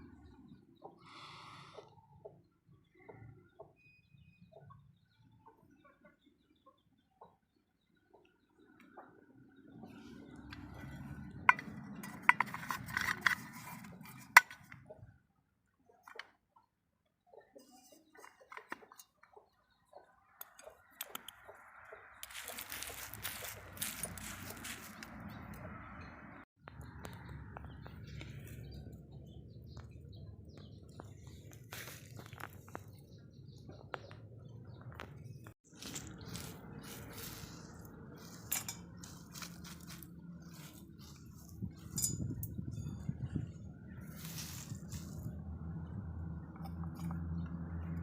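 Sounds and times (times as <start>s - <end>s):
faint bird chirps: 0.0s - 9.2s
hard objects clinking together: 10.6s - 14.8s, 35.7s - 42.6s.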